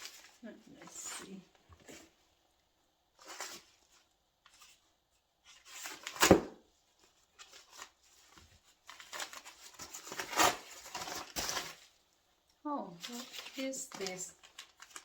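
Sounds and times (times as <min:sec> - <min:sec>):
package being torn open: 0:08.9 - 0:11.8.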